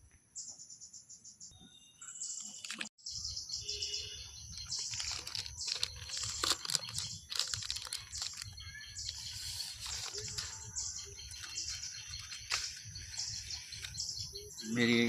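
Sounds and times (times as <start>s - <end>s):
paper rustling: 2.4s - 2.9s, 4.7s - 14.0s
paper envelope tearing: 2.5s - 2.9s, 4.8s - 10.7s.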